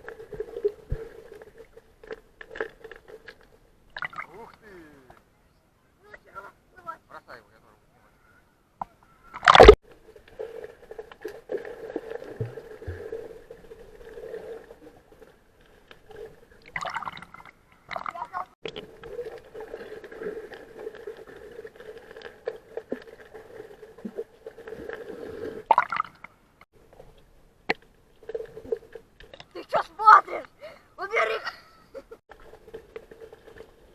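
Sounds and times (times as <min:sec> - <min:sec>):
water swishes: 0:00.0 - 0:05.1, 0:09.0 - 0:33.9
muffled water gurgling and sloshing: 0:09.2 - 0:29.5
sharp knock or splash: 0:09.5 - 0:09.8.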